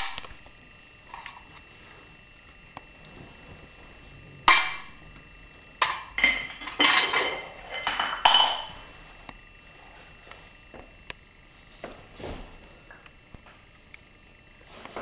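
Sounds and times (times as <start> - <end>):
hard objects clattering: 5.8 - 8.7.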